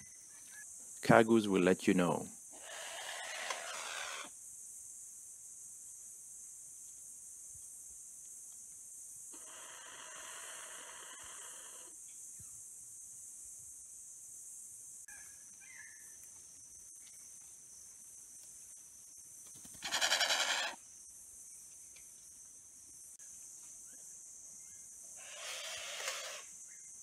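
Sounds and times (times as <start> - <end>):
high insect drone: 0.0 - 27.0
bird rasping hiss: 2.5 - 4.4, 9.4 - 12.0, 19.5 - 20.8, 25.2 - 26.8.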